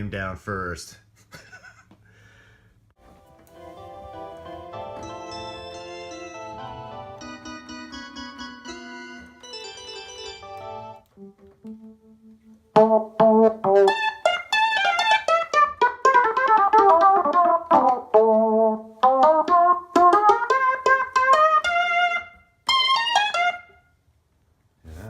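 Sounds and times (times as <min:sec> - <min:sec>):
synthesizer melodic notes: 0:03.2 - 0:22.3.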